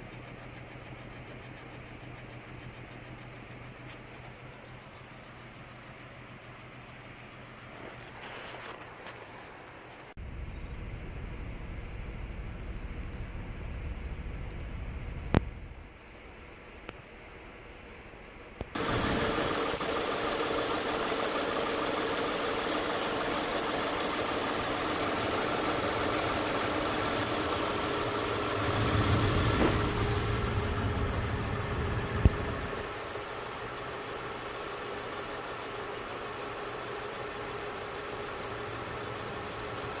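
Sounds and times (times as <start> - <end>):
car engine idling with misfire: 18.8 - 40.0.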